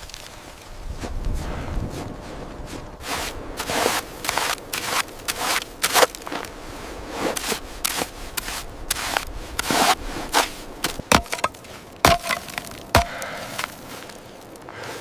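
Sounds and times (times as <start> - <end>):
rough scraping and crunching: 0.0 - 15.0
sharp knocks: 11.0 - 13.7.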